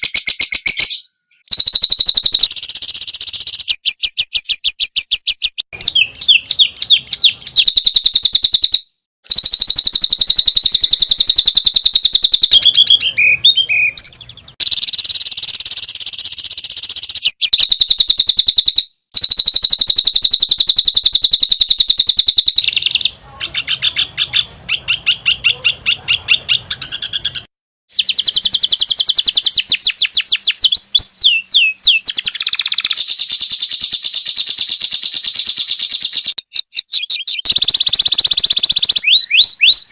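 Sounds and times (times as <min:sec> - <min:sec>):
songbird trilling: 0:00.0 - 0:39.9.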